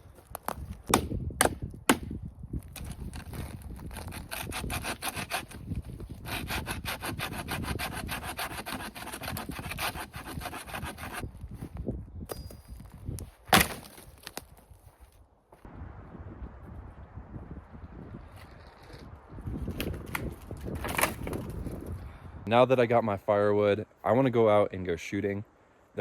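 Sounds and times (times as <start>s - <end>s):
saw cutting dead wood: 2.8s - 11.2s.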